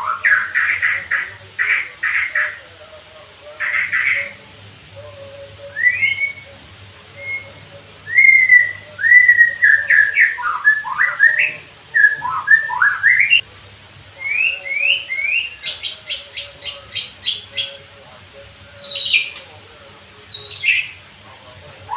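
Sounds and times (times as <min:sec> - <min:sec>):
bird singing whistled phrases: 0:00.0 - 0:02.6, 0:03.6 - 0:04.4, 0:05.5 - 0:13.4, 0:14.2 - 0:17.8, 0:18.8 - 0:19.4, 0:20.3 - 0:21.0.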